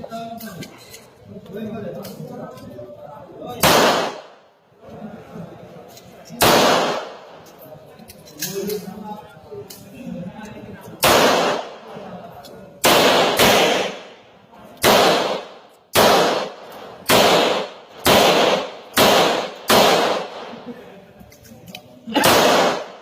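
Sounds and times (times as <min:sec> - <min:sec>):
pistol shots with echo: 0:03.6 - 0:04.5, 0:06.4 - 0:07.4, 0:11.0 - 0:12.0, 0:12.8 - 0:14.2, 0:14.8 - 0:20.7, 0:22.2 - 0:23.0.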